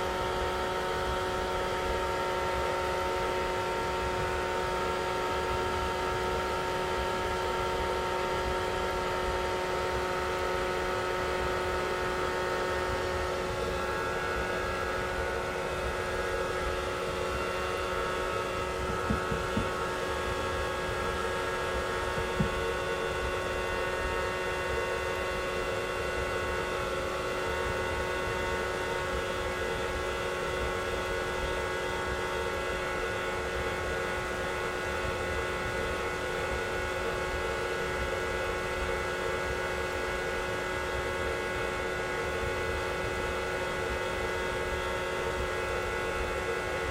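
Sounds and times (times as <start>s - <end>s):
hairdryer running: 0.0s - 46.9s.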